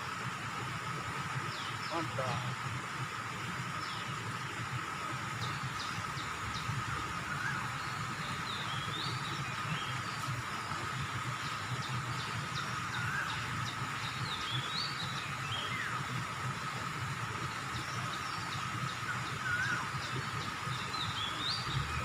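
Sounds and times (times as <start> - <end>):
bird singing: 1.5 - 2.5, 5.3 - 16.3, 17.5 - 22.0.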